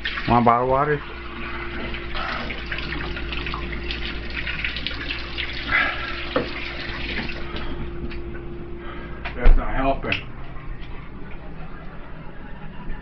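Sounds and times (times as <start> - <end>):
tap water running into sink: 0.0 - 8.2.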